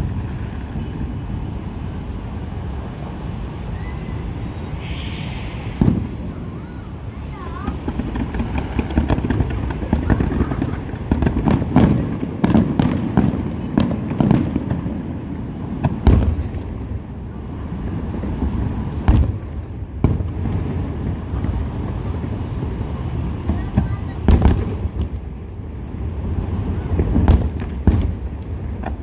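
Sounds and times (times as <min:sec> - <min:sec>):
fireworks bangs and crackling: 0:00.0 - 0:29.0
fireworks booms: 0:04.6 - 0:29.0.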